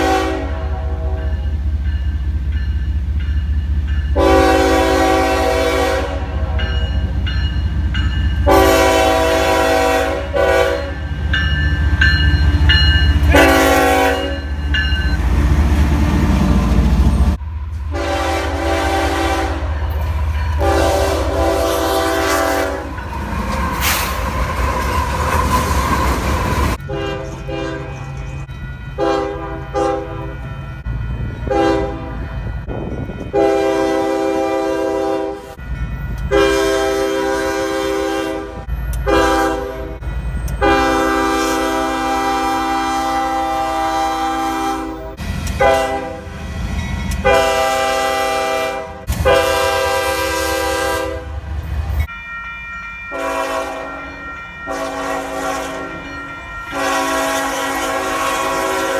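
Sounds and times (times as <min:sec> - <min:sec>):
locomotive air horn blasts: 0:00.0 - 0:01.4, 0:04.2 - 0:07.0, 0:08.4 - 0:11.2, 0:13.2 - 0:14.6, 0:17.9 - 0:19.8, 0:20.6 - 0:22.9, 0:26.7 - 0:28.1, 0:29.0 - 0:30.3, 0:31.5 - 0:32.3, 0:33.3 - 0:35.6, 0:36.3 - 0:40.0, 0:40.6 - 0:46.4, 0:47.2 - 0:51.5, 0:53.1 - 0:54.1, 0:54.7 - 0:58.9
train rumble and wheel clatter: 0:00.0 - 0:58.9.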